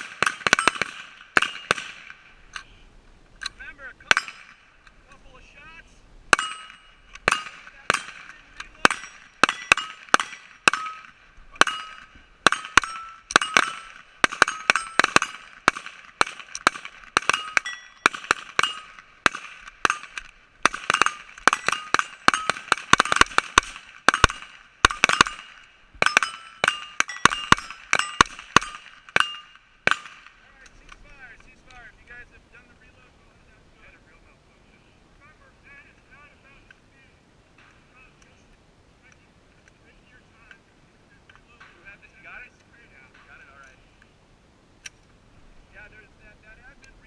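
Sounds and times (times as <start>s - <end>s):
rifles firing: 0.0s - 2.6s, 4.0s - 4.9s, 6.3s - 31.0s
metallic ring: 6.3s - 7.6s, 8.8s - 15.5s, 17.2s - 19.0s, 21.0s - 23.2s, 24.1s - 30.0s.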